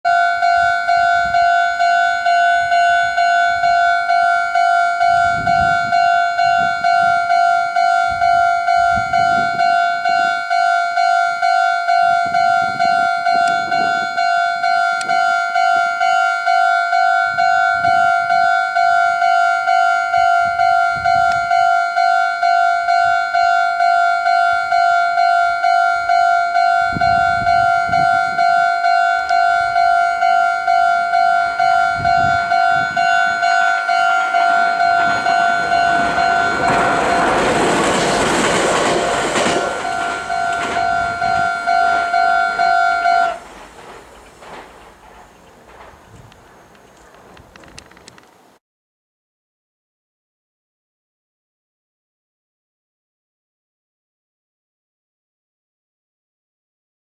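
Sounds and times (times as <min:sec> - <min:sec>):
level crossing alarm bell: 0:00.1 - 0:43.5.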